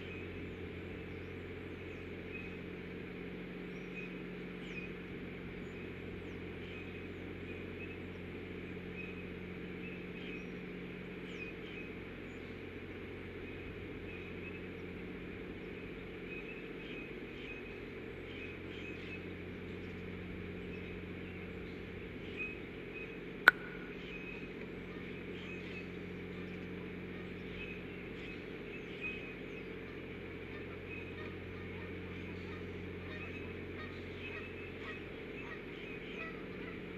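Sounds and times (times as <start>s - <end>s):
steady low hum: 0.0s - 36.9s
sharp click: 23.5s - 24.0s
faint short chirps: 23.5s - 24.1s.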